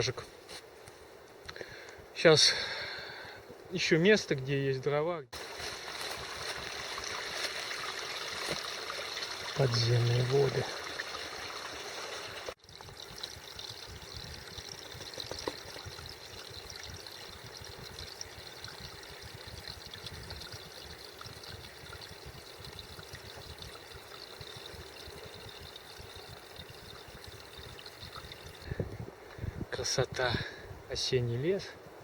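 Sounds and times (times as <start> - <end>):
groundwater trickling: 5.4 - 29.4.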